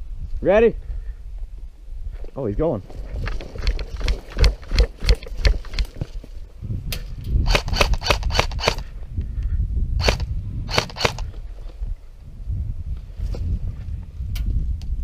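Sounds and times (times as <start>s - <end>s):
airsoft gun firing: 7.4s - 8.8s, 10.0s - 11.2s.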